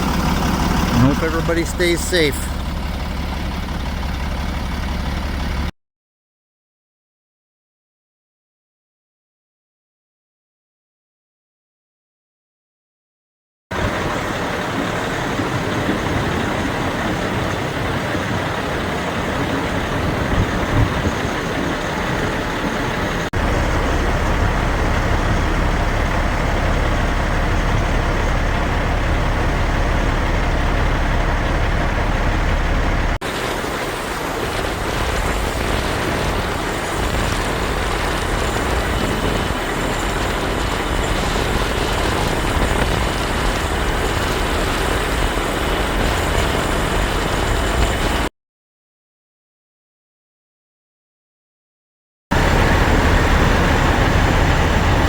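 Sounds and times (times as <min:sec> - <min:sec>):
heavy truck engines running: 0:00.0 - 0:05.7, 0:13.7 - 0:48.3, 0:52.3 - 0:55.0
road noise: 0:00.0 - 0:05.7, 0:13.7 - 0:48.3, 0:52.3 - 0:55.0.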